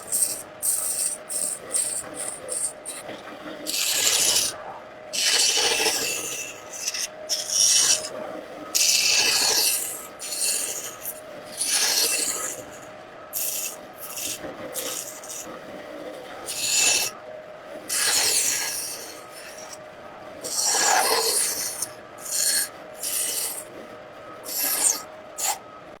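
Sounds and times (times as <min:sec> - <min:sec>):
hand tool scraping wood: 0:03.7 - 0:04.5, 0:08.8 - 0:12.8, 0:17.9 - 0:19.8, 0:20.5 - 0:23.6, 0:24.5 - 0:25.6.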